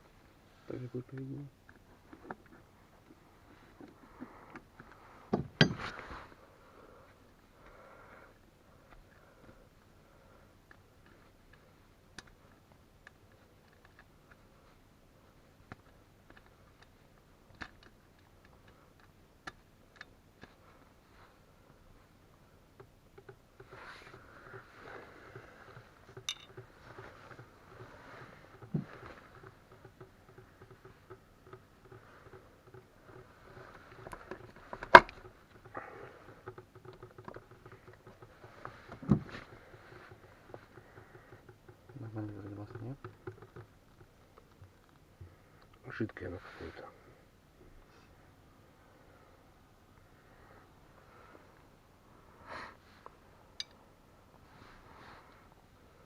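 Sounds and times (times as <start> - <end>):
small clicks and taps: 10.6 - 14.8, 15.5 - 20.8, 22.7 - 45.8.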